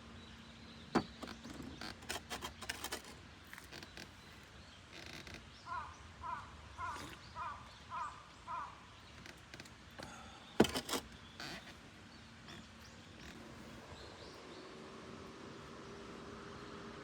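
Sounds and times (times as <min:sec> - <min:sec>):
crow cawing: 0:05.7 - 0:08.8.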